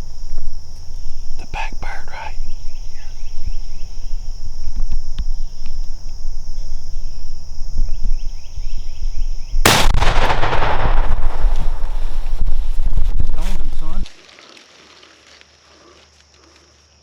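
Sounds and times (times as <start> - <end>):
insects chorus: 0.0 - 17.0
shotgun blast with echo: 9.6 - 12.8.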